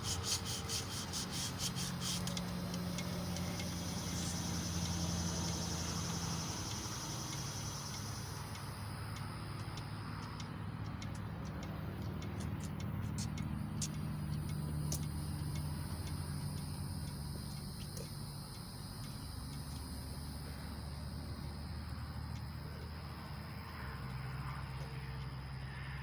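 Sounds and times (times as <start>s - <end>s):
emery cloth rasping on metal: 0.0s - 2.4s
low hum: 0.6s - 26.0s.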